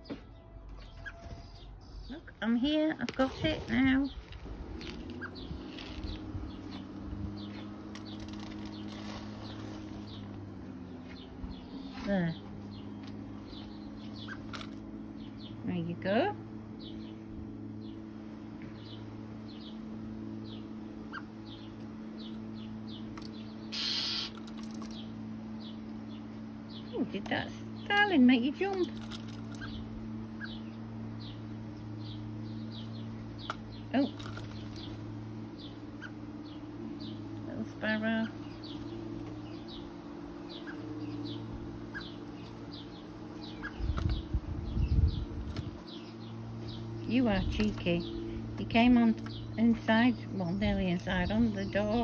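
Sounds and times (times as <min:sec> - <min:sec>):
steady low hum: 0:00.0 - 0:52.0
small bird chirping: 0:03.7 - 0:15.9, 0:20.4 - 0:52.0
low rumbling thumps: 0:42.7 - 0:52.0.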